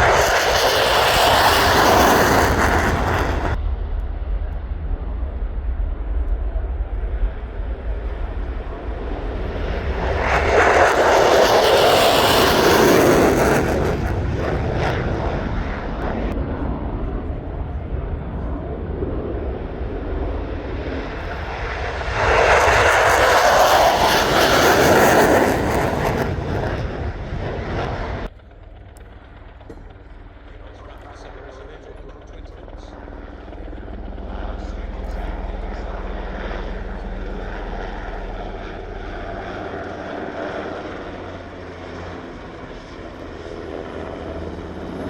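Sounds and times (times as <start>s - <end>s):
jet aircraft passing: 0.0s - 45.0s
low rumble: 0.0s - 45.0s.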